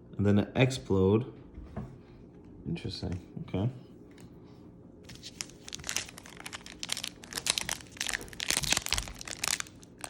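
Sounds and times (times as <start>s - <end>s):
foil wrapper crinkling: 5.1s - 10.0s.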